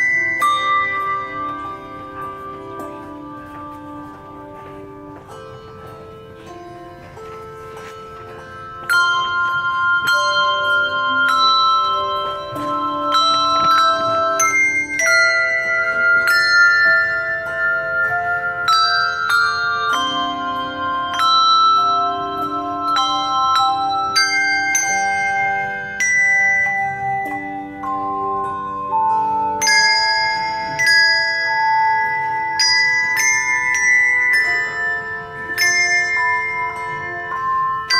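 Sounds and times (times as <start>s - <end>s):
handbells playing melody: 0.0s - 37.9s.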